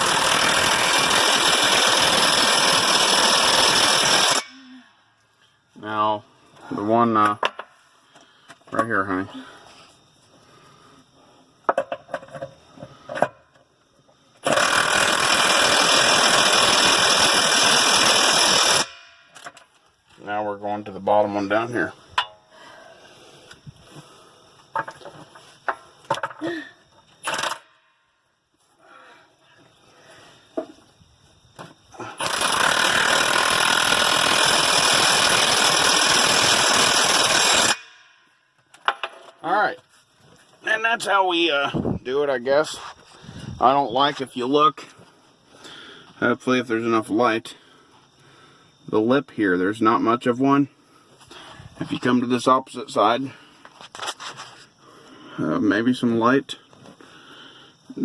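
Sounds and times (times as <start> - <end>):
impact wrench hammering: 0.0 - 4.5, 14.4 - 19.6, 27.2 - 27.6, 32.2 - 38.1.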